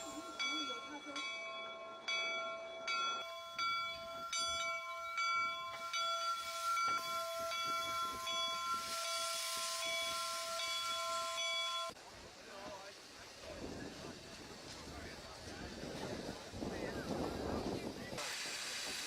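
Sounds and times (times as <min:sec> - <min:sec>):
steam locomotive bell ringing: 0:00.0 - 0:12.0
steam hissing: 0:05.8 - 0:19.0.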